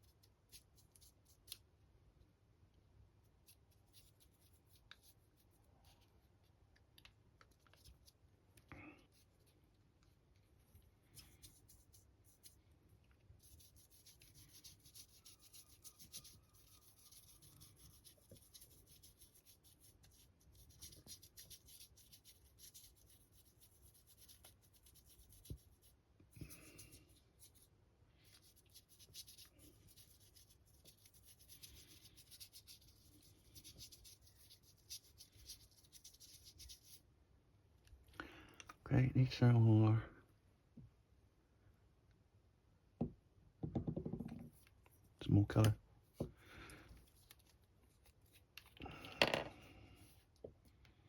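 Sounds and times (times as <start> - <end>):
paintbrush scratching and rubbing: 3.3 - 6.5, 9.1 - 37.0.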